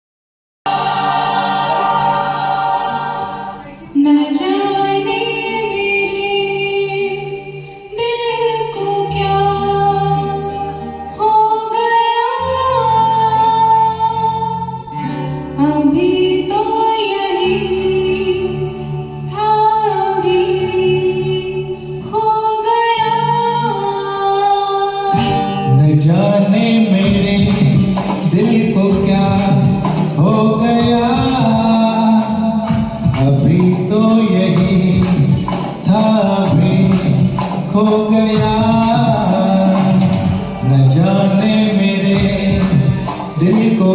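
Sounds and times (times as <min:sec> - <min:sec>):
gliding lead melody: 0:22.6 - 0:43.9
bass line: 0:25.2 - 0:43.9.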